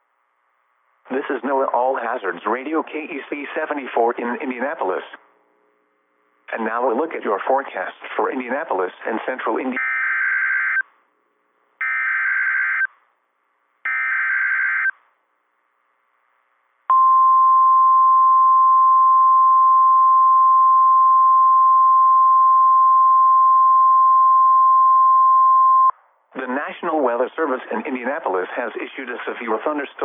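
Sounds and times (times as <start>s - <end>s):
steady warning alarm tone: 9.8s - 10.8s, 11.8s - 12.9s, 13.9s - 15.0s.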